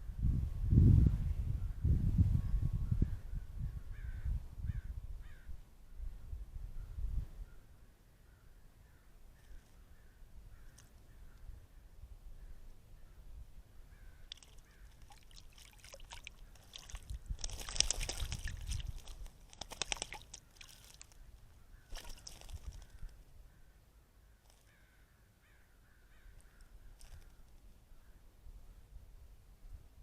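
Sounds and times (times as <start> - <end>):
faint bird calls: 2.4 - 5.6, 6.8 - 17.0, 19.9 - 28.9
water splashing in bird bath: 14.2 - 21.3, 21.9 - 22.8.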